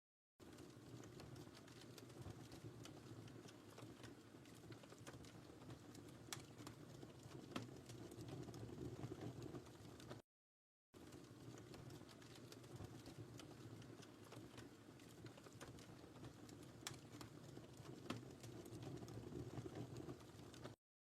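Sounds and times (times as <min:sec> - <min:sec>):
low rumble of flames: 0:00.4 - 0:10.2, 0:11.0 - 0:20.8
sharp pops and snaps of fire: 0:00.4 - 0:10.2, 0:11.0 - 0:20.8
wood fire crackling: 0:00.4 - 0:10.2, 0:11.0 - 0:20.8.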